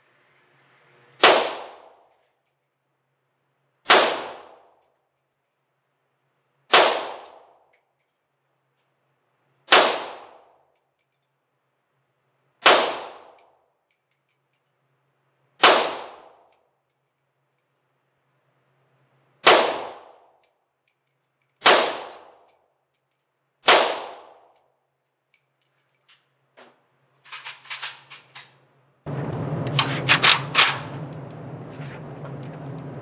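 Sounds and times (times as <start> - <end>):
rifle shots: 1.2 - 2.0, 3.9 - 4.6, 6.7 - 7.6, 9.7 - 10.5, 12.6 - 13.4, 15.6 - 16.4, 19.4 - 20.2, 21.6 - 22.4, 23.6 - 24.4, 29.7 - 31.0.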